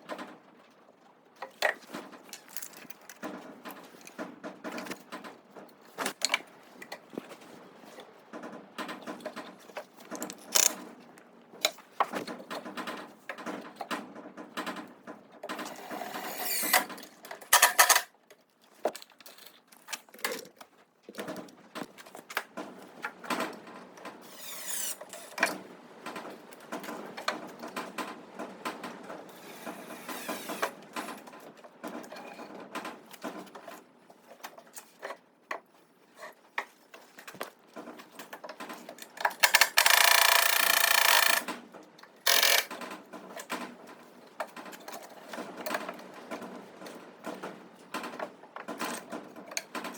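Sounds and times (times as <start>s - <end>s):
knocks and clicks of tools and wood: 0.0s - 49.9s.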